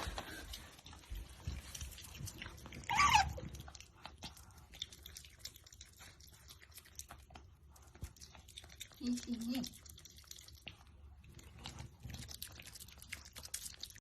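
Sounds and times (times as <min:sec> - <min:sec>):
otter chewing and crunching food: 0:00.0 - 0:14.0
otter squeak: 0:02.8 - 0:03.5.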